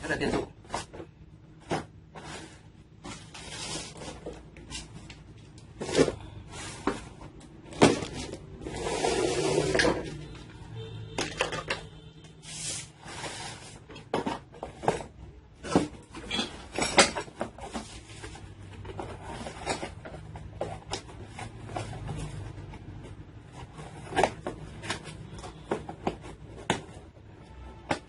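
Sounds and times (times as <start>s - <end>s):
objects knocking and clicking: 11.1s - 12.0s, 13.9s - 27.1s.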